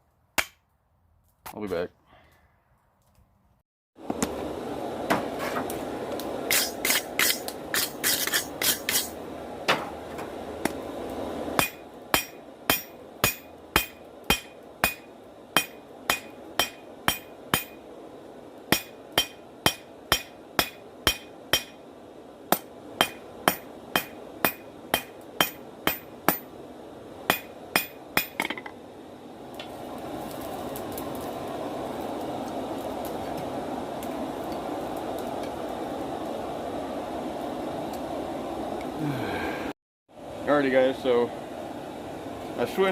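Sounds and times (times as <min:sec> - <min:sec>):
hammer striking hot steel on anvil: 0:00.4 - 0:00.6, 0:06.5 - 0:09.9, 0:11.6 - 0:17.8, 0:18.7 - 0:21.8, 0:22.5 - 0:26.5, 0:27.3 - 0:28.7.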